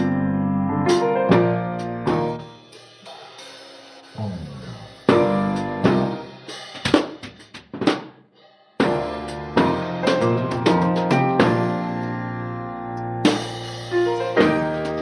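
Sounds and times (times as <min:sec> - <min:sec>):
drum fill: 0:02.1 - 0:11.8, 0:13.2 - 0:15.0
keyboard passage: 0:04.2 - 0:05.4
instrumental rock music: 0:08.8 - 0:15.0.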